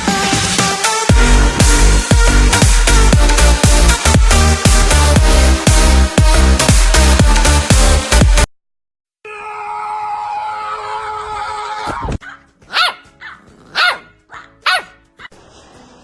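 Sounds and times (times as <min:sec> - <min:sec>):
dog barking: 0:12.2 - 0:15.3.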